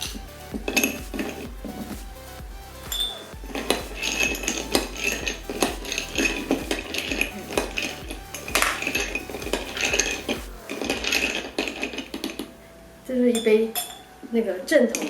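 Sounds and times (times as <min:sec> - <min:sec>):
spoon stirring ice in glass: 0:03.6 - 0:12.3.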